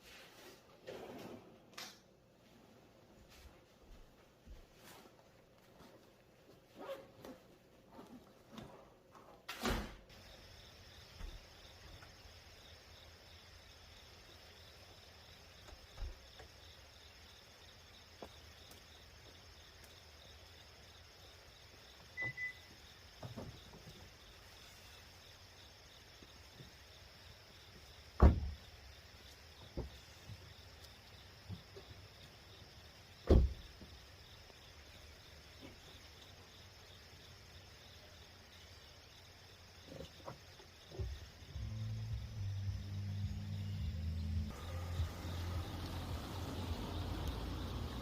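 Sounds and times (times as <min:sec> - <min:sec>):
door shutting thud: 0:09.5 - 0:10.1, 0:28.2 - 0:28.6, 0:33.2 - 0:33.6
insects buzzing: 0:10.1 - 0:48.0.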